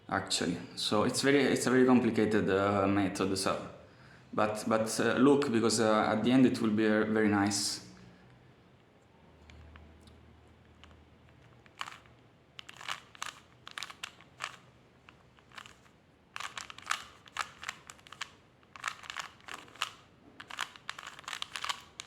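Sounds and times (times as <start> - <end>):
plastic cube clicking and scraping: 9.4 - 22.0.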